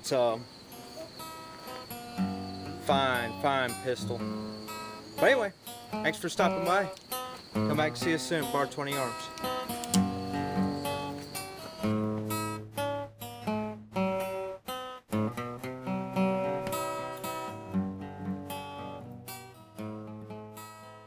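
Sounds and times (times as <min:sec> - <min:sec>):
acoustic guitar strumming: 0:00.1 - 0:21.0.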